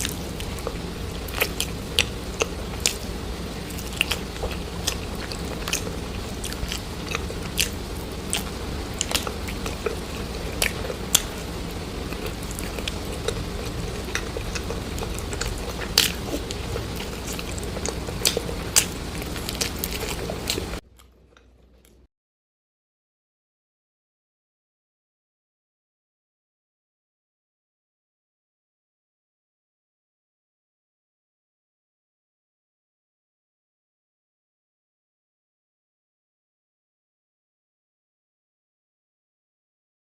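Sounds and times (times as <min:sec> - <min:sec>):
chewing crunchy food: 0:00.0 - 0:22.1.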